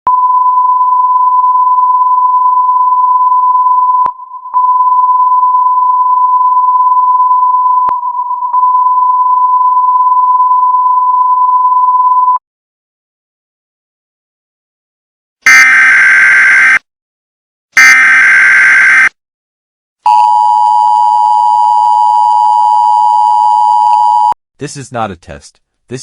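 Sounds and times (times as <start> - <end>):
emergency alert tone: 15.5 - 16.8, 17.8 - 19.1.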